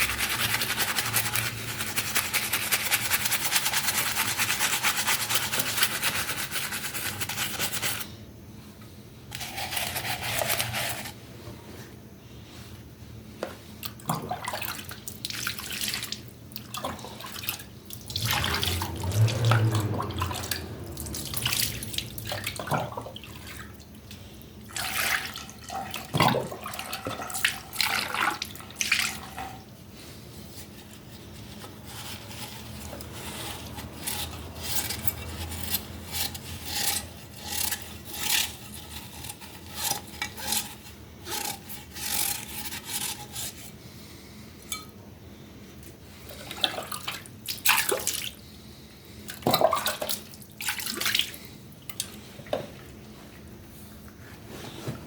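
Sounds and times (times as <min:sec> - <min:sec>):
water splashing in a sink: 0:13.8 - 0:24.0, 0:24.7 - 0:29.6, 0:46.4 - 0:48.4, 0:49.3 - 0:53.0.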